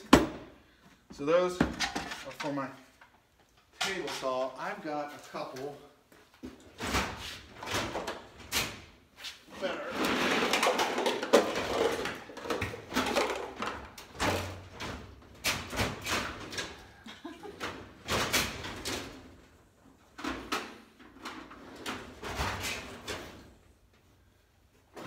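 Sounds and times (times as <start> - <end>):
tools clattering into plastic case: 10.2 - 14.9.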